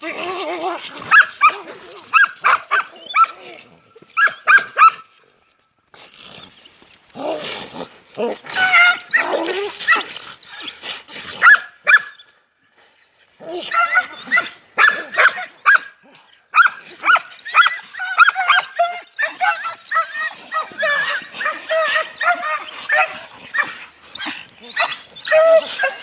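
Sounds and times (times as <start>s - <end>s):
dogs barking: 1.1s - 3.3s, 13.7s - 15.9s.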